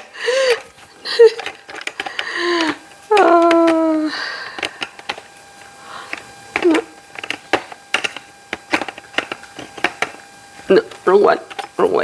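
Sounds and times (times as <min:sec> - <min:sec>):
plastic parts clicking and knocking: 0:01.3 - 0:03.8, 0:06.1 - 0:10.2.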